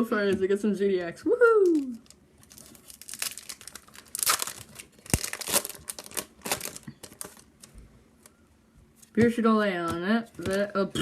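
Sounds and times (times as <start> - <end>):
foil wrapper tearing and crinkling: 1.6 - 7.6.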